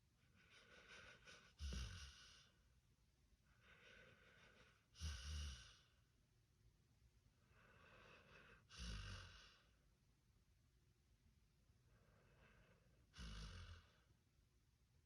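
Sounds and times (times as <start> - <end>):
dog snoring softly: 0.4 - 2.6, 3.6 - 6.0, 7.5 - 9.8, 12.0 - 14.1.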